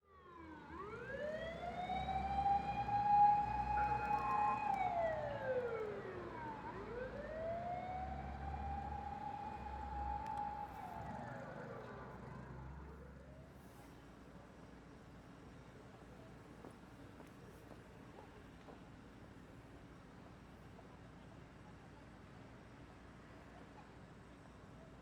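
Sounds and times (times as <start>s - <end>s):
emergency siren wailing: 0.3s - 11.8s.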